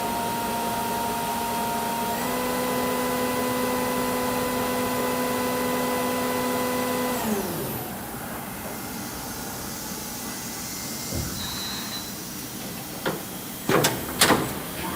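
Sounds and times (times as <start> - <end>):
machine hiss: 7.9 - 13.8.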